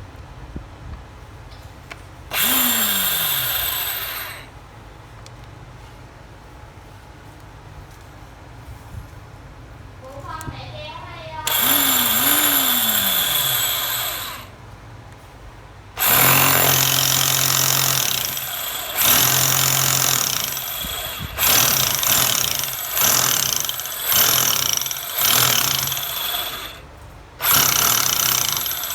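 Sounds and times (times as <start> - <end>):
cordless drill bursts: 2.3 - 4.5, 11.4 - 14.6, 16.0 - 28.9.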